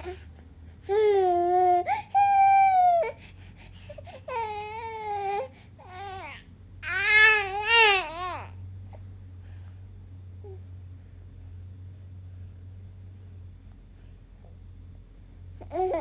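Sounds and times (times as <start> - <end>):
infant crying: 4.0 - 8.5.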